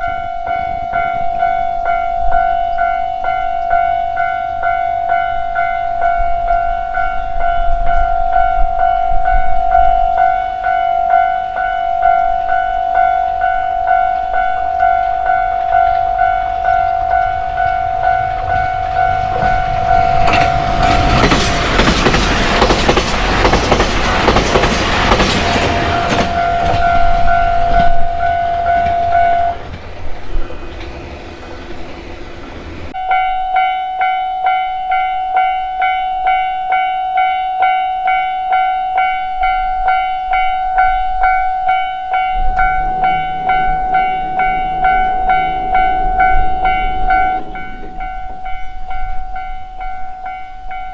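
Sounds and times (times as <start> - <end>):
level crossing warning bell: 0.0 - 50.9
train wheels clattering: 13.5 - 33.0.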